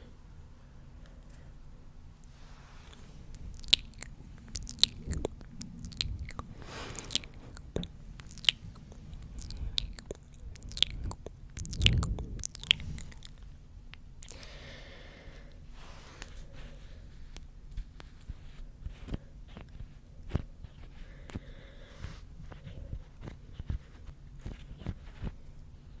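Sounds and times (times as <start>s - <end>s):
breathy hiss: 2.2s - 10.4s, 14.3s - 17.2s
wet mouth clicks and smacks: 3.3s - 14.4s.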